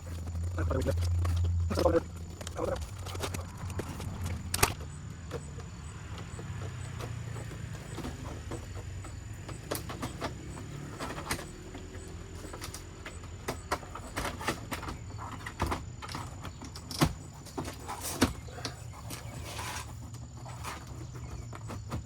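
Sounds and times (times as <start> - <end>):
steady low rumble: 0.0 - 6.0.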